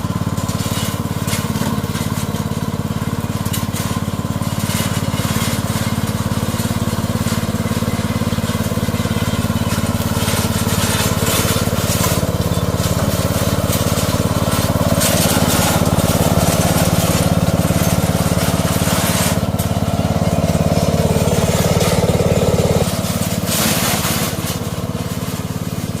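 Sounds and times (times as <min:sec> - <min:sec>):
weeding machine running: 0:00.0 - 0:26.0
crackle of vegetation being cut: 0:09.6 - 0:26.0.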